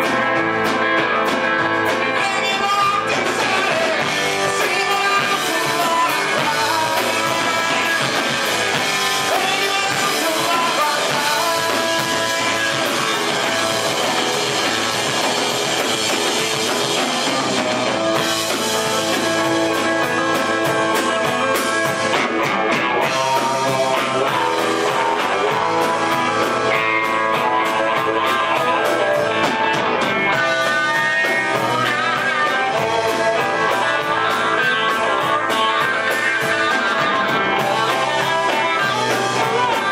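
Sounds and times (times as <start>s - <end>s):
drum kit: 0.0s - 39.9s
electric guitar: 0.0s - 39.9s
person singing: 1.2s - 39.9s.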